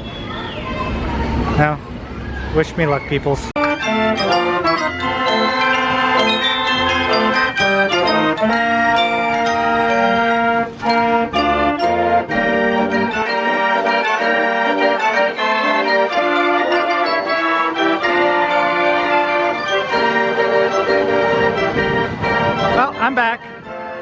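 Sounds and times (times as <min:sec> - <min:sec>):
organ music: 0:03.5 - 0:24.0.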